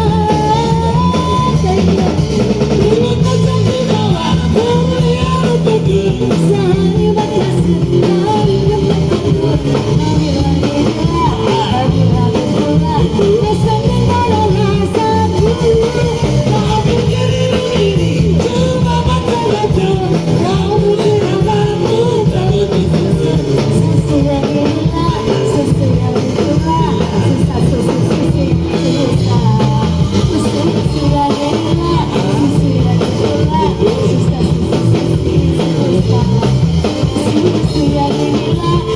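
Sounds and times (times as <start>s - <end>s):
drum kit: 0.0s - 38.9s
guitar: 0.0s - 38.9s
person singing: 0.0s - 38.9s.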